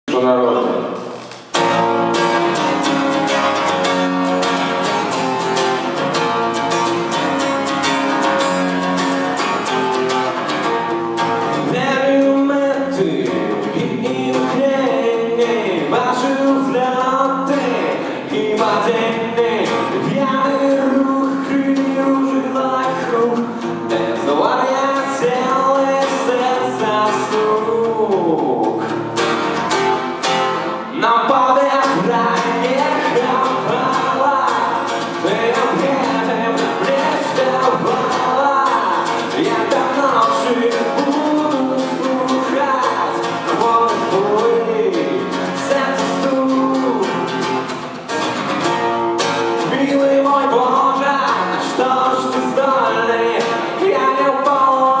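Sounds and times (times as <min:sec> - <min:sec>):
guitar accompaniment: 0:00.0 - 0:55.0
man singing: 0:11.4 - 0:29.0, 0:30.6 - 0:47.8, 0:49.5 - 0:55.0.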